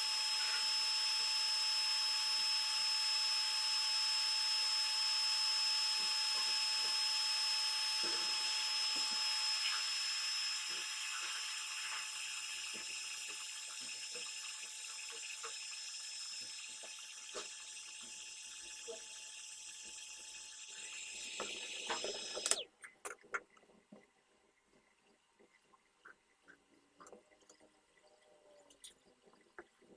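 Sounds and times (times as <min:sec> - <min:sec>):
power tool motor whine: 0:00.0 - 0:22.6.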